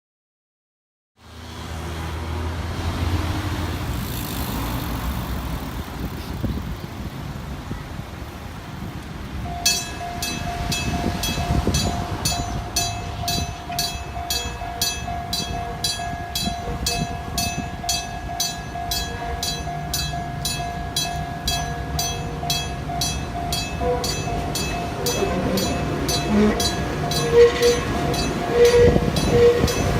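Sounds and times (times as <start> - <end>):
traffic rumble: 1.2 - 29.9
level crossing warning bell: 9.4 - 29.9.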